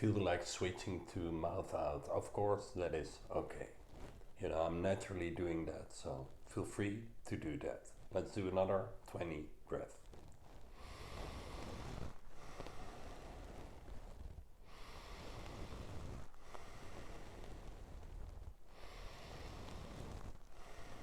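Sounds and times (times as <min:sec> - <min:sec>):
man breathing deeply: 0:10.8 - 0:13.9, 0:14.6 - 0:18.0, 0:18.7 - 0:21.0.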